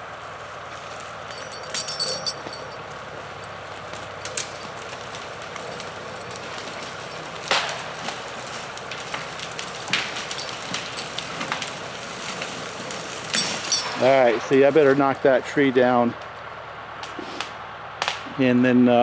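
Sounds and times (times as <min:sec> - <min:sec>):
tractor engine running: 0:00.0 - 0:18.1
wood and branches cracking: 0:00.3 - 0:15.0.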